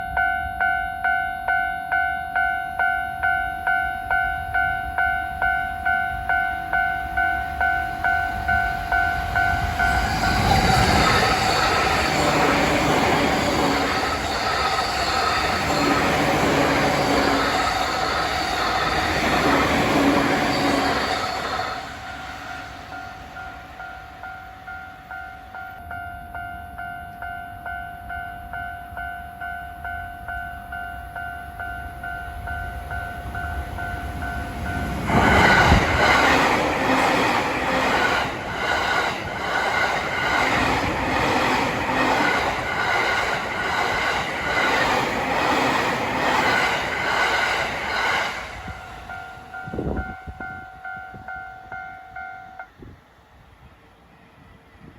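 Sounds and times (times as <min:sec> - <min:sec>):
level crossing warning bell: 0:00.0 - 0:52.8
train wheels clattering: 0:09.1 - 0:23.6, 0:34.8 - 0:50.0.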